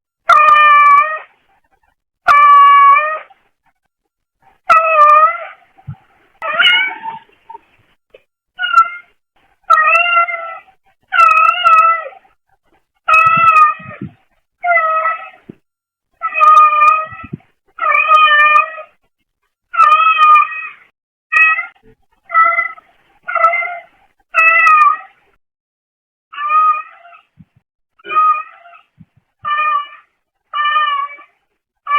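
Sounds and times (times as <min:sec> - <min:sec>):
cat meowing: 0:06.4 - 0:07.3, 0:09.7 - 0:12.2, 0:13.1 - 0:15.4, 0:19.8 - 0:23.8, 0:24.4 - 0:25.1, 0:26.3 - 0:27.3, 0:28.0 - 0:31.3.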